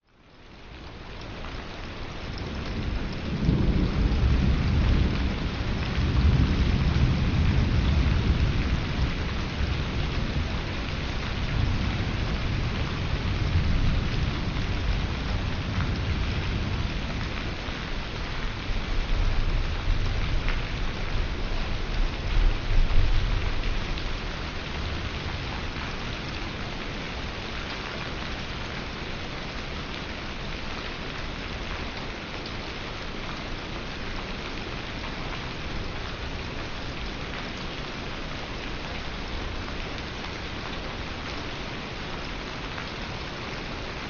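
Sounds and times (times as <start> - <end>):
steady rain: 0.0 - 44.0
low rolling thunder: 2.4 - 26.2.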